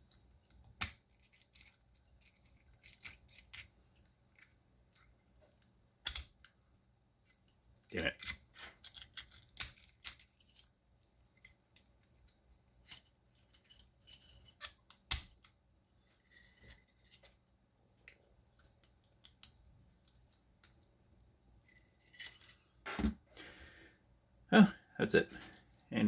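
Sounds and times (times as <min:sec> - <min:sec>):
lock tools scraping and clicking: 0:00.0 - 0:06.6, 0:07.2 - 0:10.7
light metallic jingling: 0:25.3 - 0:26.0.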